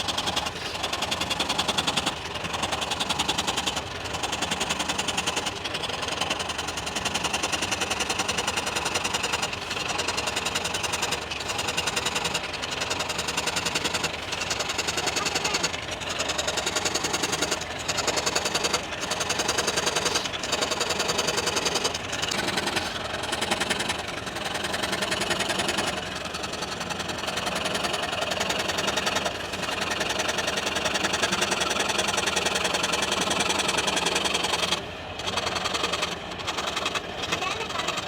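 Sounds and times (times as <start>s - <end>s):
small motor tool pulsing: 7.1s - 25.9s.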